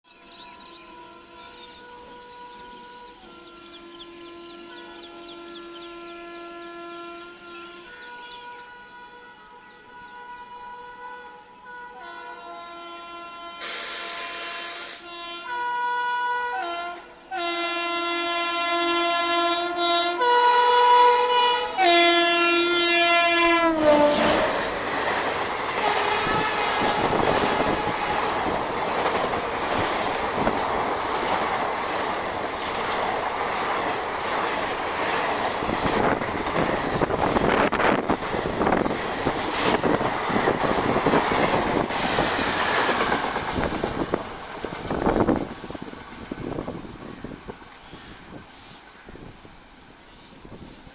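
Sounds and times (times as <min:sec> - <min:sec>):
train coaches rumbling: 0:00.1 - 0:15.2, 0:16.9 - 0:50.9
locomotive horn blasts: 0:00.8 - 0:24.7, 0:25.8 - 0:28.5
wheels clacking over rail joints: 0:23.9 - 0:47.9.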